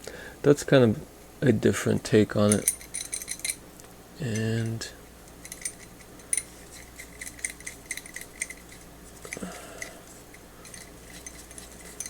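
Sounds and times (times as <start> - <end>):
metallic clicks of wrench parts: 2.5 - 3.6, 5.4 - 12.0.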